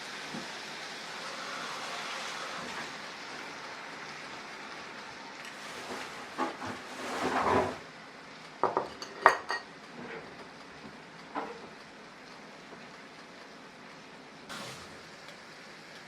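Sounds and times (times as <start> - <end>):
utensil scraping: 5.5 - 7.8
utensils and dishes clinking: 8.6 - 10.4.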